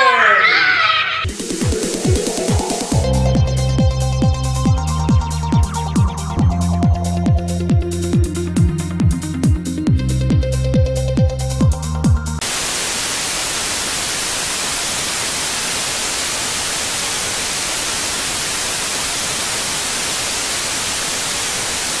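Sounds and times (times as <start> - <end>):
electronic dance music: 1.2 - 12.4
loud static hiss: 12.4 - 22.0.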